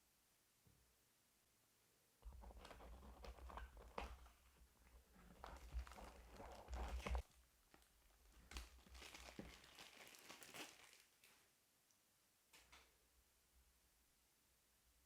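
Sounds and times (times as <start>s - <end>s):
packaging crinkling and rustling: 2.2s - 11.5s.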